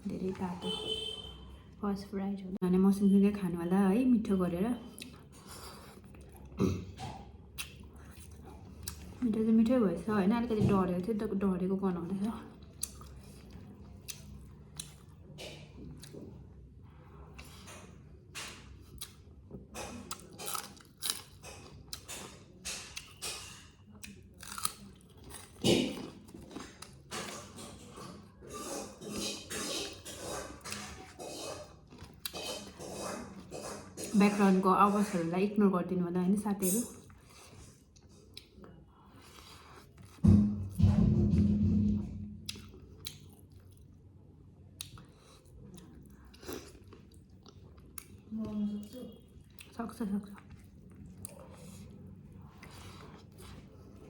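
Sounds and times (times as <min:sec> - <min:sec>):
person chewing food: 0:04.9 - 0:09.2, 0:12.2 - 0:34.2, 0:37.0 - 0:40.8, 0:42.4 - 0:54.0.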